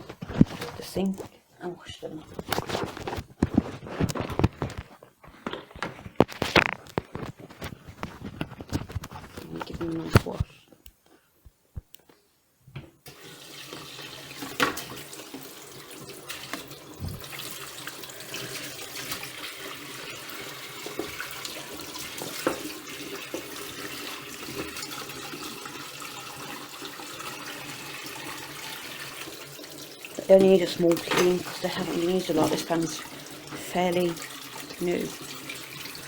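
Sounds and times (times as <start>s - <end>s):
tap water running into sink: 13.1s - 36.0s.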